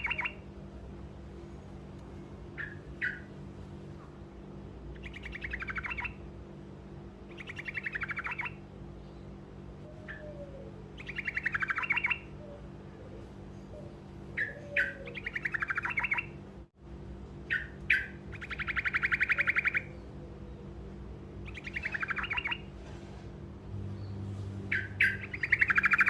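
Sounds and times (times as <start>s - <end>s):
songbird trilling: 0.0s - 0.4s, 2.5s - 3.3s, 4.9s - 6.3s, 7.3s - 9.2s, 9.9s - 12.7s, 13.6s - 16.4s, 17.4s - 20.7s, 21.4s - 22.7s, 24.0s - 26.0s.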